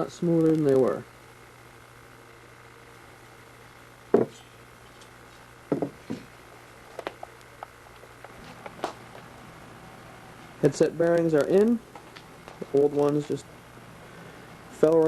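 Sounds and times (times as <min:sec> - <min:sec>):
dull knocks: 0:05.7 - 0:06.2.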